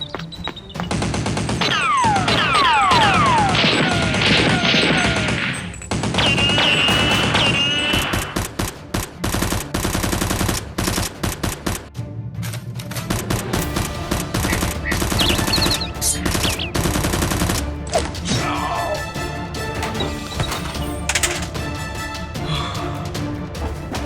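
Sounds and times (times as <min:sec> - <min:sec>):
music: 0:00.0 - 0:24.0
automatic gunfire: 0:00.9 - 0:11.8, 0:13.2 - 0:17.6.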